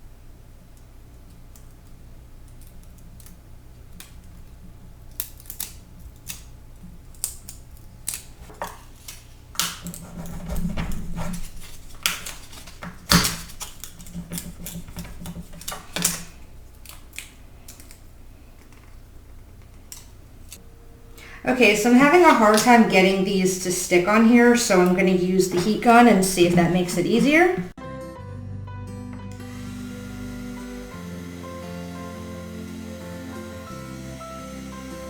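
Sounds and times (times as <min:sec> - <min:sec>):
rustling or scraping: 0:08.2 - 0:16.5
low hum: 0:20.5 - 0:27.8.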